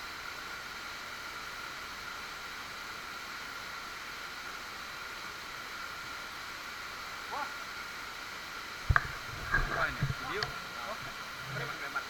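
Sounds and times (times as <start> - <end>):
waterfall rushing: 8.8 - 12.0.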